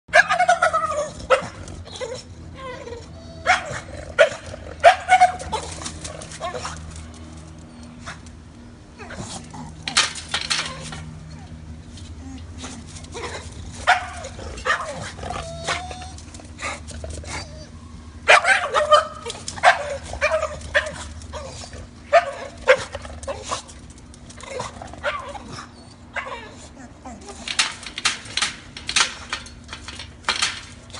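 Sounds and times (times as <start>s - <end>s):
puppy yelping: 0.1s - 6.8s, 13.1s - 23.6s.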